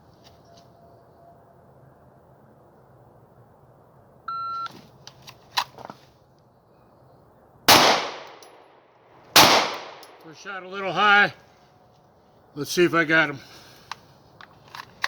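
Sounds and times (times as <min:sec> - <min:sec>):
clicks and rustles of pistol draw: 0:04.7 - 0:06.2, 0:13.6 - 0:15.0
handgun shot with echo: 0:07.7 - 0:08.6, 0:09.4 - 0:10.2.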